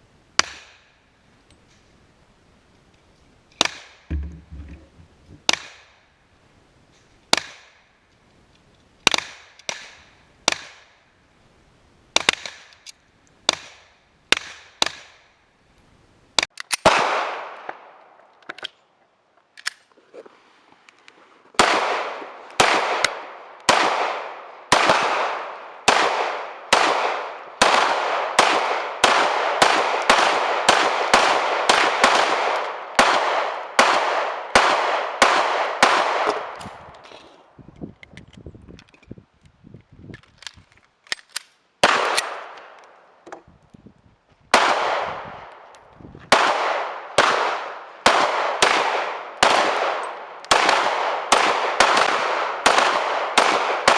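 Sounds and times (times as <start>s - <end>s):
echoing gunshots: 16.8s - 18.0s, 21.6s - 36.5s, 41.8s - 42.8s, 44.5s - 45.6s, 46.3s - 53.9s.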